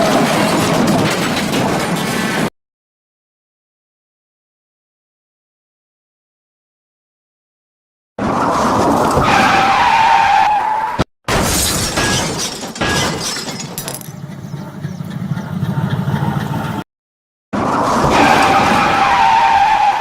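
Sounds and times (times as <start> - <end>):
car crash with breaking glass: 11.3 - 13.8.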